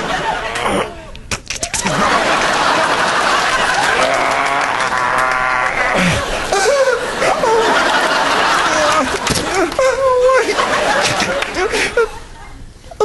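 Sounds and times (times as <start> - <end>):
audience laughing: 0.0 - 1.1, 1.7 - 12.7
man making mouth sound effects: 0.4 - 2.0, 4.0 - 6.2
audience applauding: 1.7 - 6.8, 7.4 - 9.9, 10.7 - 11.8.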